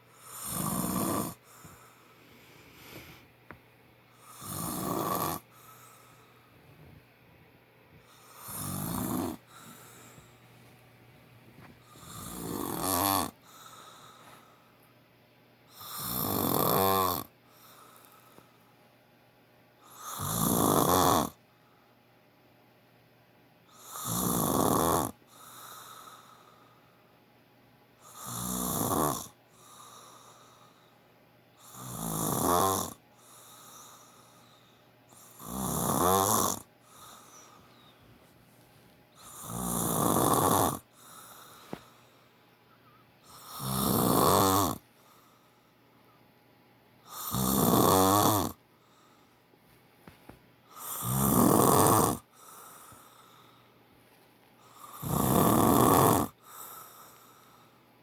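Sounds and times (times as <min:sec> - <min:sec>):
man snoring: 0:00.2 - 0:01.5, 0:04.2 - 0:05.5, 0:08.2 - 0:10.2, 0:11.9 - 0:14.3, 0:15.8 - 0:17.3, 0:20.0 - 0:21.4, 0:23.8 - 0:26.3, 0:28.0 - 0:30.6, 0:31.6 - 0:34.3, 0:35.2 - 0:37.9, 0:39.2 - 0:41.8, 0:43.3 - 0:44.8, 0:47.1 - 0:48.6, 0:50.8 - 0:53.5, 0:54.6 - 0:57.7
soft breathing: 0:01.3 - 0:07.1, 0:07.9 - 0:10.9, 0:13.4 - 0:14.9, 0:17.4 - 0:18.8, 0:25.2 - 0:27.1, 0:29.5 - 0:31.1, 0:33.2 - 0:35.4, 0:36.8 - 0:39.6, 0:40.8 - 0:43.6, 0:44.8 - 0:45.9, 0:48.7 - 0:51.0, 0:52.2 - 0:55.1, 0:56.3 - 0:58.0.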